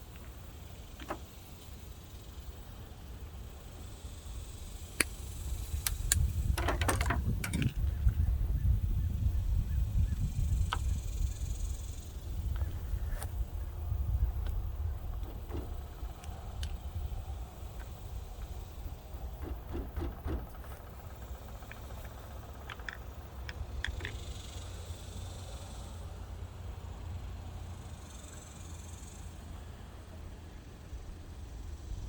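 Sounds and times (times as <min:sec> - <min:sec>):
low steady rumble: 0:00.0 - 0:32.0
small sharp clicks: 0:05.0 - 0:08.2, 0:19.4 - 0:24.5
dull knocks: 0:19.2 - 0:21.0.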